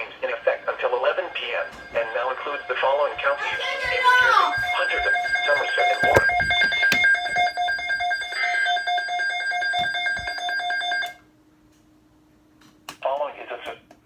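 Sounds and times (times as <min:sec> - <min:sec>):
pulsing electronic alert tone: 0:00.0 - 0:07.8.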